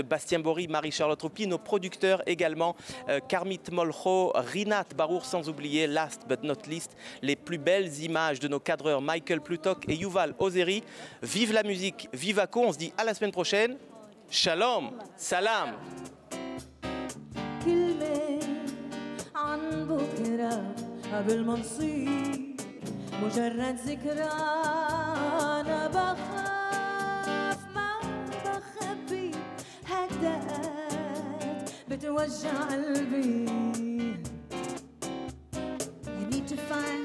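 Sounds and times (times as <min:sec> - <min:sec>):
acoustic guitar: 0:00.0 - 0:12.5, 0:13.9 - 0:37.0
person singing with vibrato: 0:01.0 - 0:07.4, 0:08.8 - 0:12.6, 0:17.4 - 0:34.8, 0:36.1 - 0:37.0.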